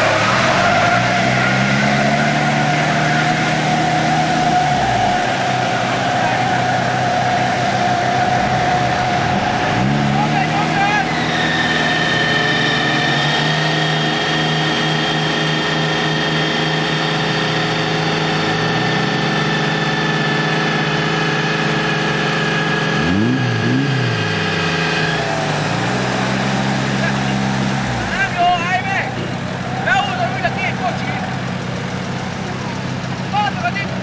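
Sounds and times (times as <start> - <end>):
steady high whine: 0.0 - 21.1
off-road engine running under load: 0.0 - 34.0.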